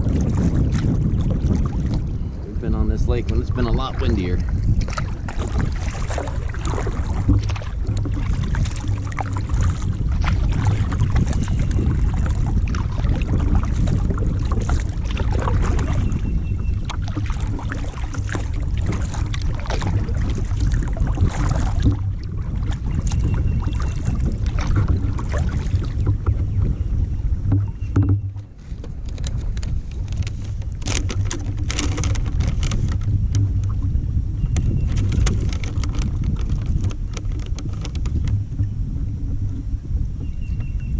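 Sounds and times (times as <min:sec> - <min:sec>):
paddle splashes and drips: 0:00.0 - 0:39.6
wind rumbling on microphone: 0:00.0 - 0:40.9.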